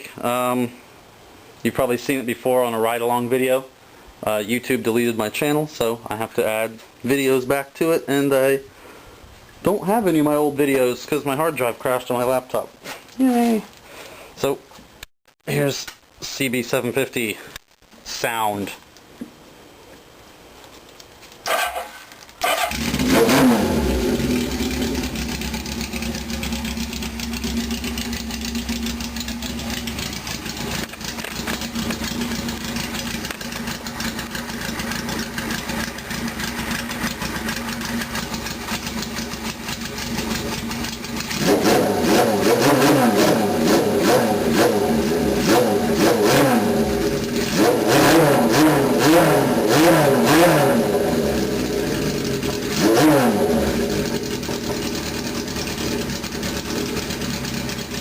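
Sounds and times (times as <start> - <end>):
motorcycle throttle blips: 21.5 - 55.0
motorcycle engine idling: 22.6 - 42.0, 51.2 - 52.8, 53.4 - 58.0.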